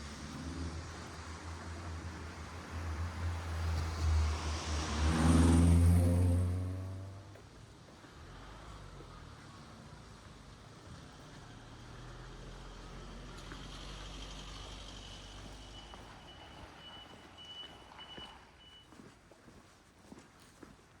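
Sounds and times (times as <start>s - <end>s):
reversing alarm beeping: 15.6s - 18.9s.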